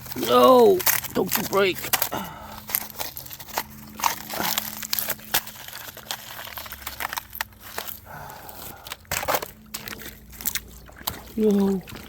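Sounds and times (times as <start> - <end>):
ice crunching and cracking: 0.0 - 12.0.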